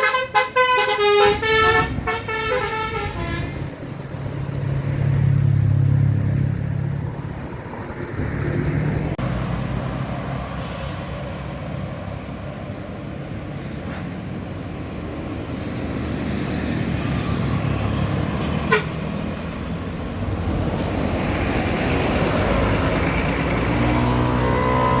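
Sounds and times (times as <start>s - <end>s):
vehicle horn: 0.0s - 3.7s, 18.7s - 19.0s
buses and trucks passing: 0.0s - 25.0s.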